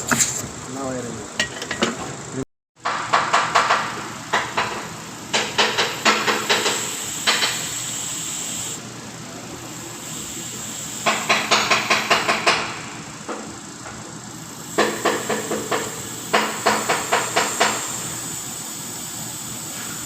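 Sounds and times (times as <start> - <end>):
compressed air hissing: 3.3 - 13.6, 14.3 - 20.0.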